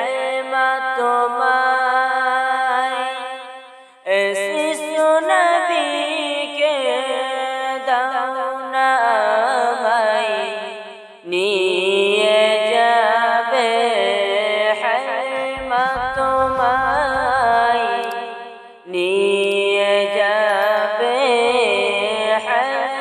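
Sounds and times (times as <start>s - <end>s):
low held drone note: 15.6s - 18.2s.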